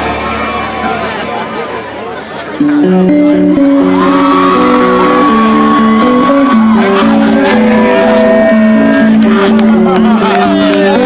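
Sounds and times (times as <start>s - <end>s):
long held high note: 2.6s - 10.8s
guitar picking a quick riff: 2.6s - 11.0s
live rock band playing: 2.6s - 11.0s
shouting: 3.8s - 11.0s.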